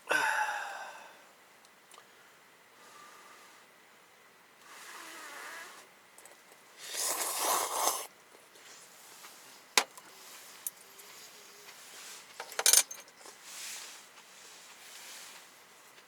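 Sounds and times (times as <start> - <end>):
noodles being slurped: 6.8 - 8.1.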